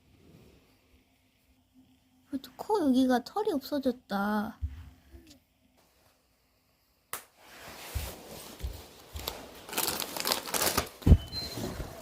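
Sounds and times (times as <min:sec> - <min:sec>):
rustling and crinkling: 0:07.4 - 0:12.0.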